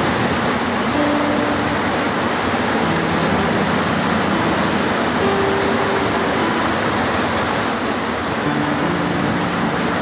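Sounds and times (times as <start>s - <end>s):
heavy rain: 0.0s - 10.0s.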